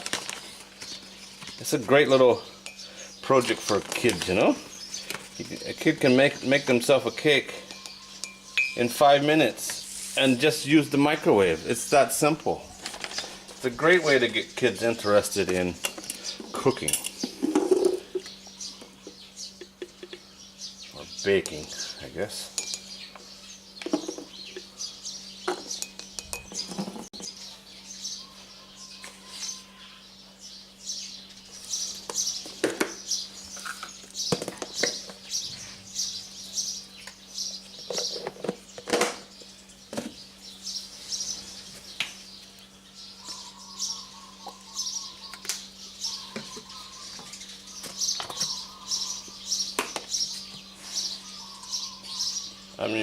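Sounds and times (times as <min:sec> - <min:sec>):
small birds chirping: 0:00.0 - 0:53.0
spoon clinking against a cup: 0:07.6 - 0:08.8, 0:22.5 - 0:22.9, 0:25.5 - 0:26.6.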